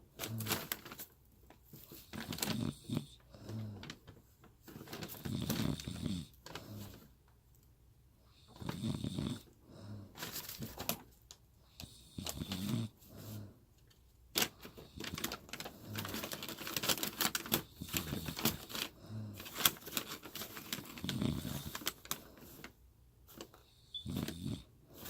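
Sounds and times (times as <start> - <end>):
woman snoring: 5.2 - 6.9, 8.5 - 10.2, 11.8 - 13.5, 21.0 - 21.8, 23.8 - 24.7.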